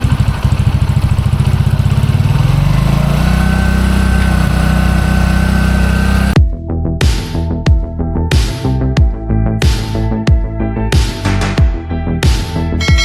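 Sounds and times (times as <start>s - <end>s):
motorcycle engine running: 0.0s - 6.5s, 12.8s - 13.0s
electronic music: 12.7s - 13.0s.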